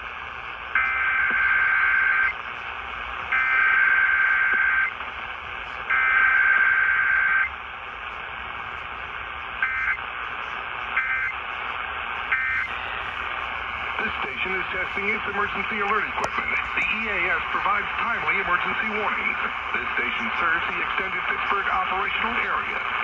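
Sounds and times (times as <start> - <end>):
radio hiss: 0.0 - 23.0
raspy data tone bursts: 12.3 - 19.0.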